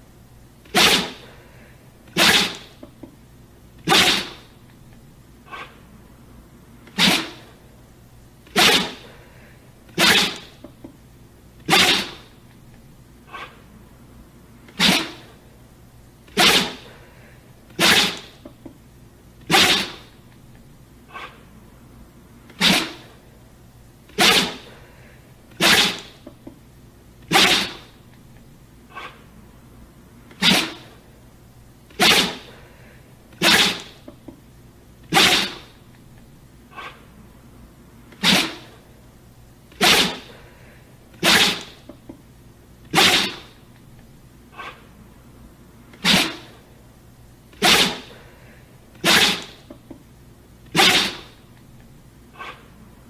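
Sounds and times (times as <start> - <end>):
dog sneezing: 0.6 - 2.9, 3.8 - 4.6, 5.5 - 5.8, 6.8 - 7.6, 8.4 - 10.7, 11.6 - 12.4, 13.3 - 13.6, 14.7 - 15.4, 16.3 - 18.5, 19.4 - 20.2, 21.1 - 21.4, 22.5 - 23.2, 24.1 - 26.3, 27.3 - 28.0, 28.9 - 29.3, 30.3 - 31.0, 31.9 - 34.1, 35.1 - 35.8, 36.7 - 37.1, 38.1 - 38.8, 39.7 - 42.0, 42.9 - 43.6, 44.5 - 44.9, 45.9 - 46.6, 47.5 - 49.8, 50.7 - 51.4, 52.4 - 52.7.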